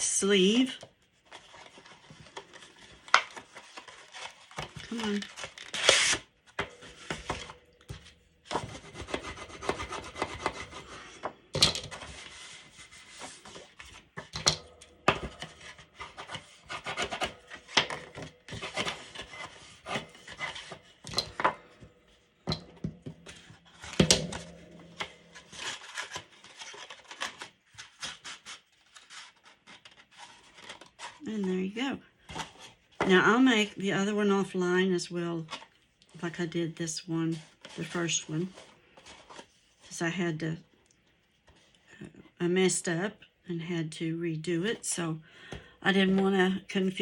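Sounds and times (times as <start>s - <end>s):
hands scraping paper on desk: 6.8s - 11.3s.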